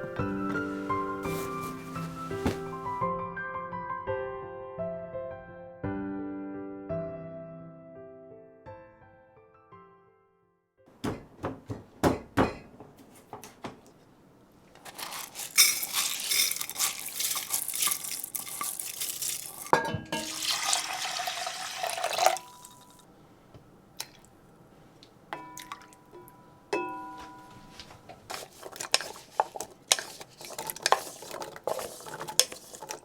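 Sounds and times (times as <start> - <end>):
crockery clinking: 14.8 - 20.6, 25.4 - 27.7
container filling under tap: 14.9 - 23.0
water running from tap: 15.8 - 23.0.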